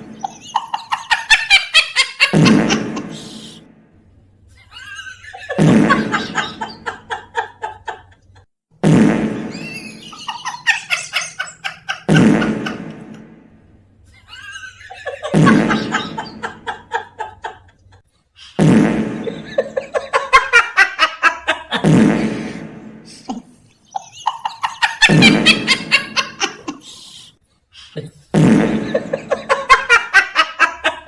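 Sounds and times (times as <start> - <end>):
strange cackling laugh: 0.0 - 3.6, 4.6 - 8.4, 9.4 - 13.2, 14.2 - 18.0, 19.2 - 22.0, 23.4 - 27.3, 28.7 - 31.0.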